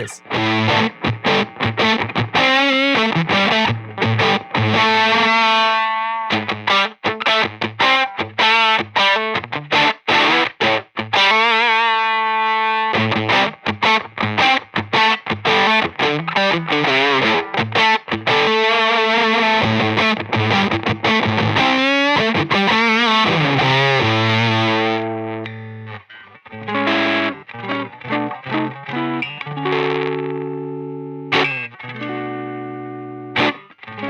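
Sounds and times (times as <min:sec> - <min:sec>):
fuzzed electric guitar riffs: 0:11.0 - 0:34.0.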